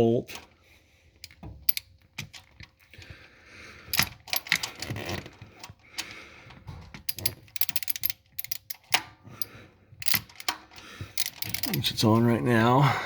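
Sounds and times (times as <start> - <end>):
ratchet wrench clicking: 7.0 - 11.9.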